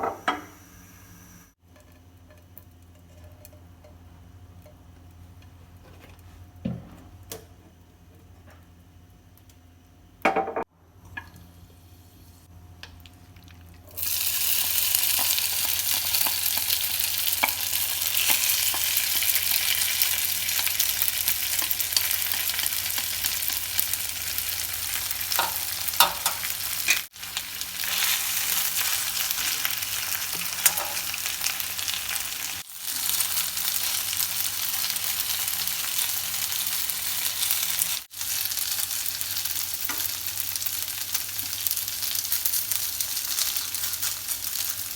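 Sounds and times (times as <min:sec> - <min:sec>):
potato strips sizzling in a pan: 0:13.9 - 0:44.9.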